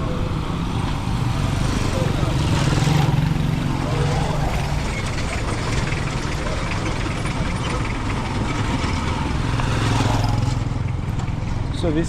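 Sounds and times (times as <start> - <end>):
street traffic din: 0.0 - 12.0
vehicle engine droning: 0.0 - 12.0.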